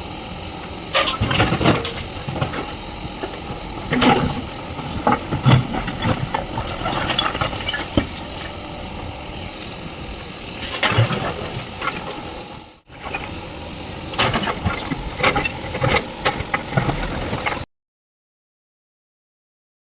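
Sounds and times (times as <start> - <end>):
heavy diesel engine running: 0.0 - 17.6.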